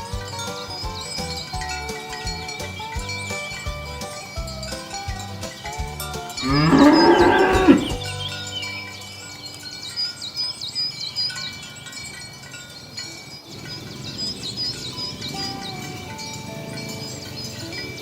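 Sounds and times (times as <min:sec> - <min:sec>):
chime-like background music: 0:00.0 - 0:18.0
cow mooing: 0:06.4 - 0:08.0.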